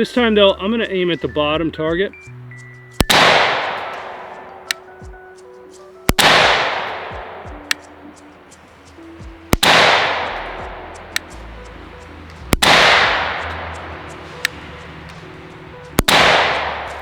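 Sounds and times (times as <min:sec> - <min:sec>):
rifle shots with echo: 0:03.0 - 0:04.9, 0:06.1 - 0:07.8, 0:09.5 - 0:11.3, 0:12.5 - 0:14.6, 0:16.0 - 0:17.0.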